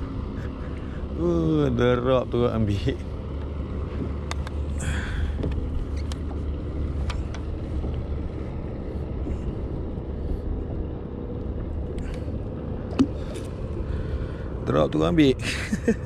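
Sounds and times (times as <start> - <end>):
low motor hum: 0.0 - 16.0.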